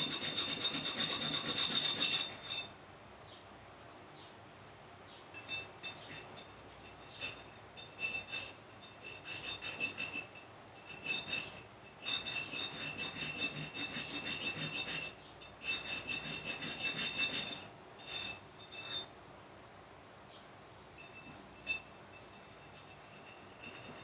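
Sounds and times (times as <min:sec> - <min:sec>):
metal being scrubbed or filed: 0:00.0 - 0:02.7, 0:05.9 - 0:19.1, 0:21.2 - 0:24.0.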